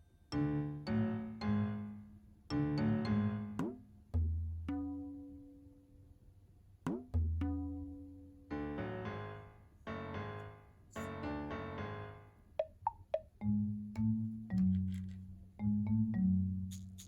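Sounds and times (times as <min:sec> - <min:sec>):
plucked low notes: 0:12.8 - 0:16.7.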